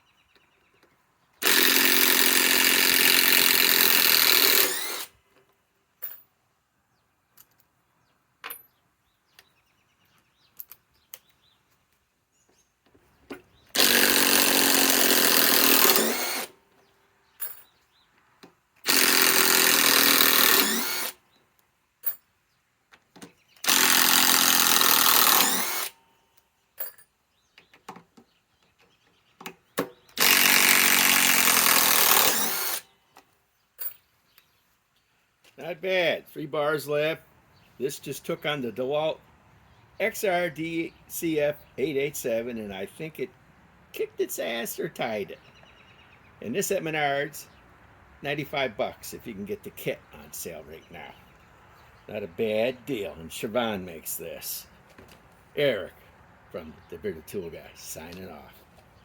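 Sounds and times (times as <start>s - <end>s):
impact driver hammering screws: 1.4s - 5.1s, 13.7s - 16.6s, 18.8s - 21.2s, 23.6s - 26.0s, 29.8s - 32.8s.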